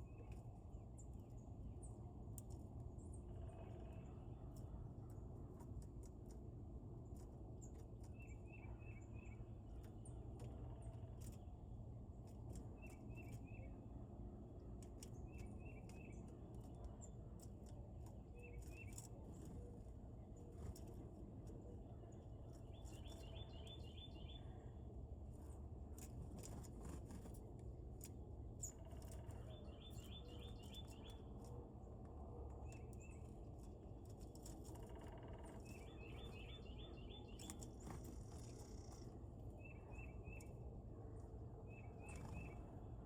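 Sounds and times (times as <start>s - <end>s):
songbird singing: 7.1s - 11.5s, 12.5s - 13.8s, 14.8s - 24.9s, 28.0s - 43.0s.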